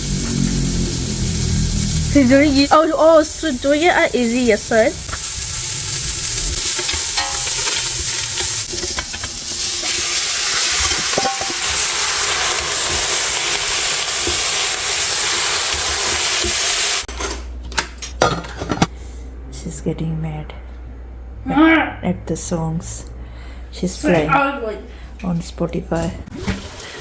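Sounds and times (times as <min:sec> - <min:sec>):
food sizzling in a pan: 0:00.0 - 0:17.1
stirring: 0:05.1 - 0:16.6.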